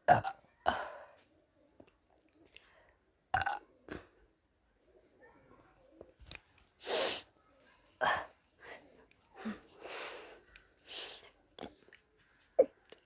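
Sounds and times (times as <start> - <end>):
woman burping: 0.0 - 1.0, 3.3 - 4.1.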